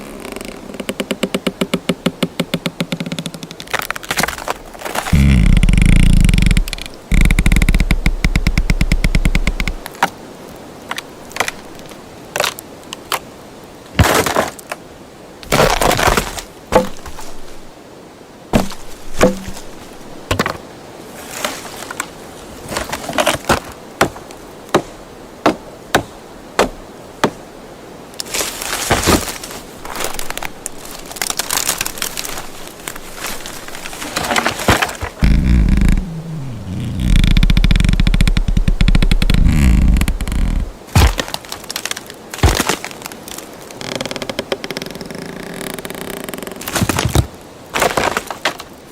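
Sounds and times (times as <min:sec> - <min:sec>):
rattling wood creak: 0:00.0 - 0:09.9, 0:11.0 - 0:11.9, 0:15.4 - 0:17.7, 0:18.5 - 0:20.6, 0:28.2 - 0:48.7
wood cracking and snapping: 0:00.0 - 0:10.2, 0:10.9 - 0:13.2, 0:14.0 - 0:14.8, 0:15.4 - 0:17.7, 0:18.5 - 0:20.6, 0:28.2 - 0:48.9.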